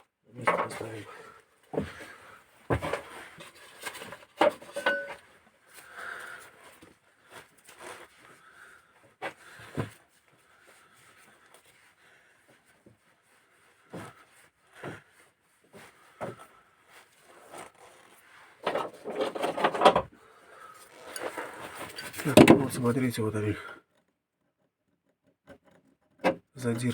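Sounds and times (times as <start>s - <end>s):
rattling clatter: 18.6s - 20.1s
engine parts clicking and knocking: 18.6s - 20.2s, 21.1s - 23.0s.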